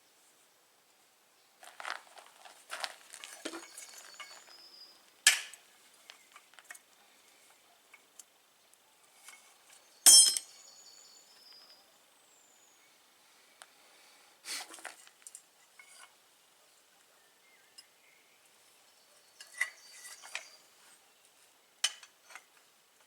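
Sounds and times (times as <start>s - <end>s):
sharp metal clanks ringing: 10.0s - 10.5s.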